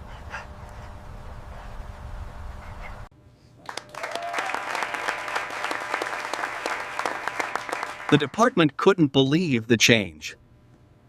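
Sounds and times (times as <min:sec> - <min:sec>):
people clapping and applauding: 0:03.6 - 0:08.6.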